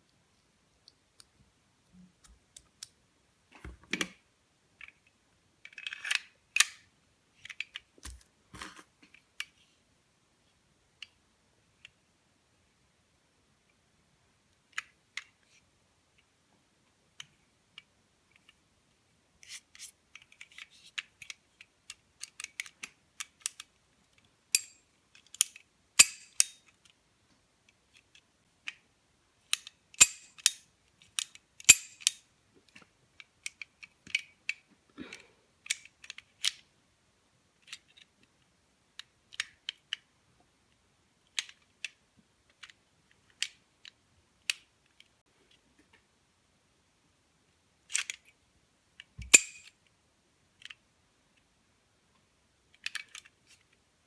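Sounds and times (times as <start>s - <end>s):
metallic clicks of toy pistol: 24.5s - 26.7s, 29.5s - 32.2s, 49.2s - 49.7s.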